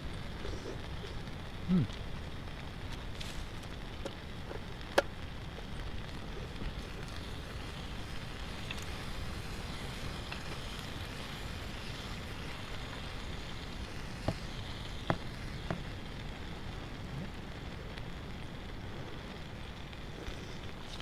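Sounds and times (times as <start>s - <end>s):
campfire crackling: 0.0s - 21.0s.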